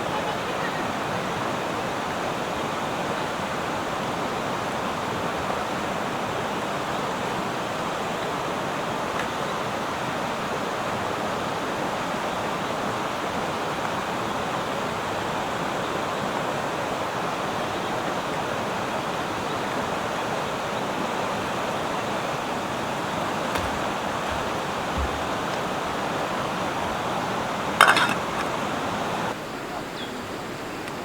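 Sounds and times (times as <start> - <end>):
river water rushing over stones: 21.5 - 29.4
faint knocks: 22.9 - 28.6.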